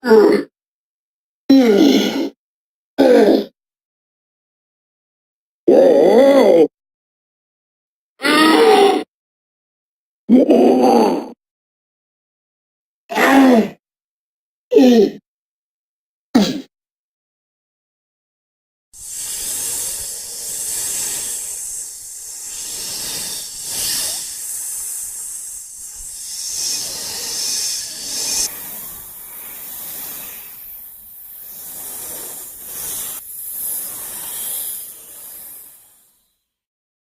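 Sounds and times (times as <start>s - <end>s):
monster hiss: 19.0s - 36.3s.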